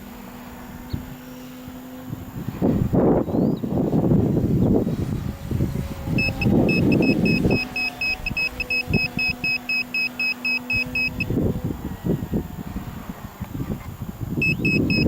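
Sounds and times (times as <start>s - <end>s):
wind buffeting microphone: 0.0s - 9.7s, 10.6s - 15.0s
rapid electronic beeping: 6.2s - 11.3s, 14.4s - 15.0s.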